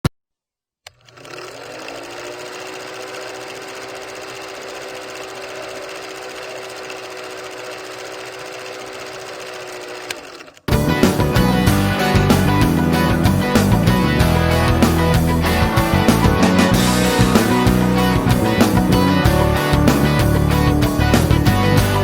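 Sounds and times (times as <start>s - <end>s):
small motor whining and humming: 0.9s - 10.7s.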